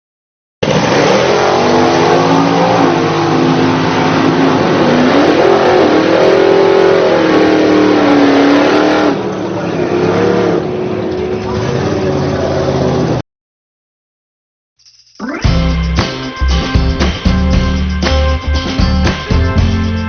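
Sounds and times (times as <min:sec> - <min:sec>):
car engine revving: 0:00.6 - 0:13.2.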